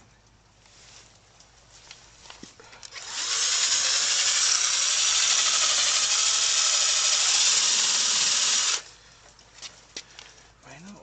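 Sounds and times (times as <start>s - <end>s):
electric drill buffing plastic: 2.9s - 8.9s.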